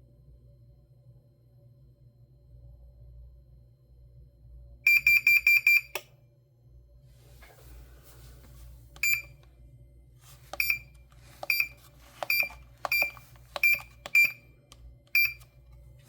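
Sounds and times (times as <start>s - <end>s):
short high beeps: 10.6s - 14.4s, 15.2s - 15.4s
keypad key click: 11.4s - 14.4s.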